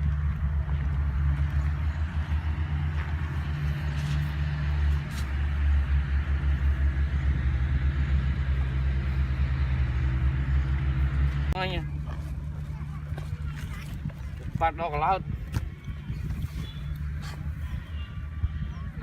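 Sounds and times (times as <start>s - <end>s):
engine droning: 0.0s - 19.0s.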